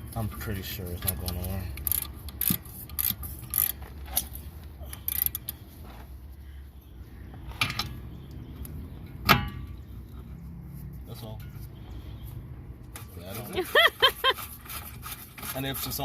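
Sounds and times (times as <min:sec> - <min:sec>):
hand tools clicking on metal: 0:01.0 - 0:04.3.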